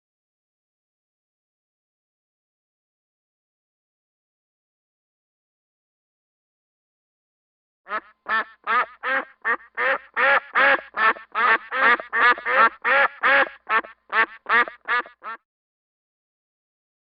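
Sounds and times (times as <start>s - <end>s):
duck quacking: 7.9s - 15.4s.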